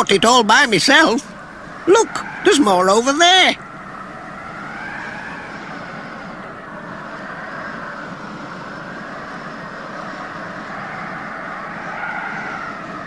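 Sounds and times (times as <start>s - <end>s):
howling wind: 0.0s - 13.0s.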